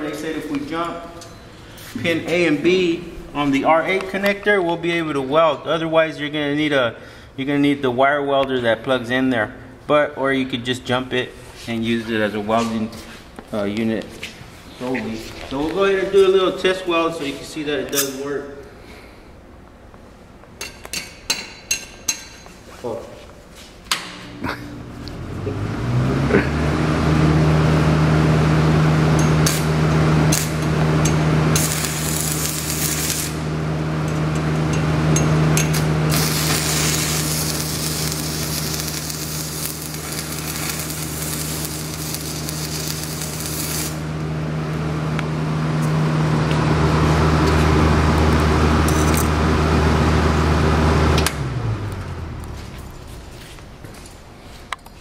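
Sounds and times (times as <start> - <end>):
welding machine humming: 24.4 - 53.4
welding arc sizzling and crackling: 29.1 - 33.5, 34.1 - 44.2.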